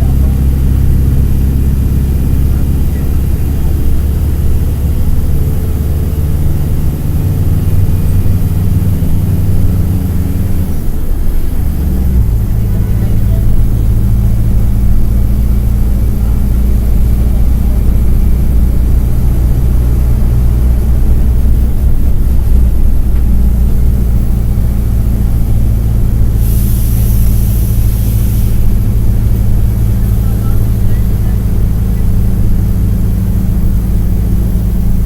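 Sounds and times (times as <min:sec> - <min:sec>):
bus diesel engine running: 0:00.0 - 0:35.0
brief air hiss: 0:26.3 - 0:28.9.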